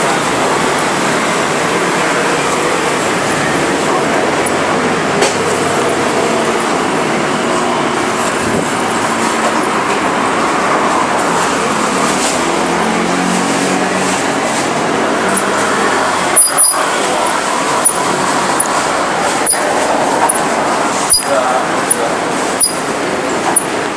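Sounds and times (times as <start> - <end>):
motorcycle wheel turning: 14.2 - 23.7.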